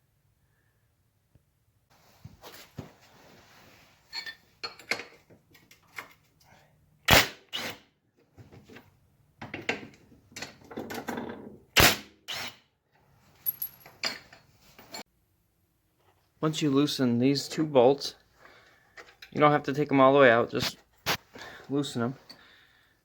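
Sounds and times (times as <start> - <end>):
metal wrench clinks and clicks: 13.4 - 15.0.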